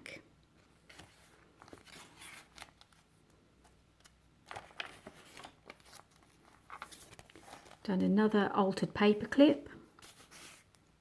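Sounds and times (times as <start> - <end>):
paper pages rustling and crinkling: 0.6 - 7.9, 10.0 - 10.8.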